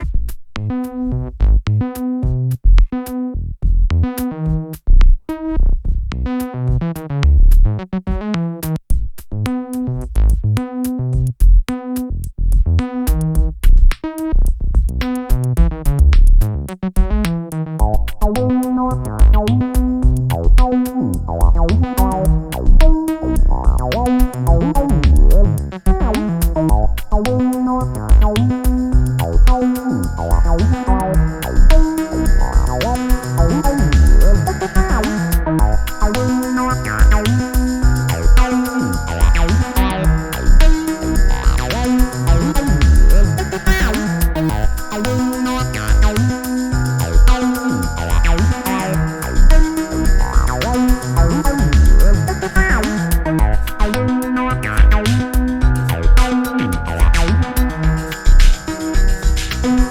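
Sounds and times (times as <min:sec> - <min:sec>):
drum machine beat: 0:00.0 - 0:05.4, 0:06.3 - 0:59.9
synthesizer notes: 0:28.2 - 0:55.6.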